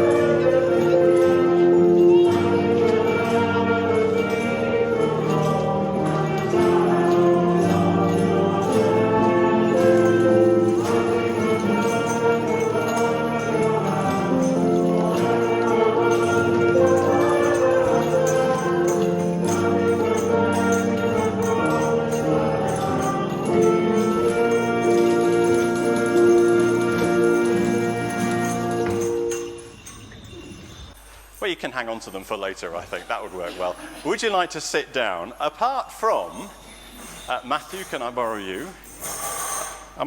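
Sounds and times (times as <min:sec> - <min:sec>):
choir singing: 0:00.0 - 0:29.6
light jingling percussion: 0:00.0 - 0:40.0.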